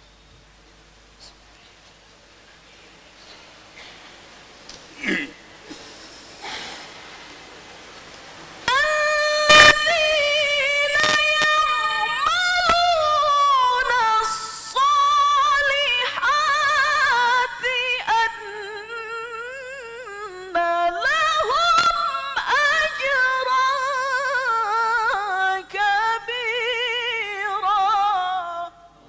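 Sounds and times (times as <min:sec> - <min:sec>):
person chanting recitation: 0:08.6 - 0:28.8.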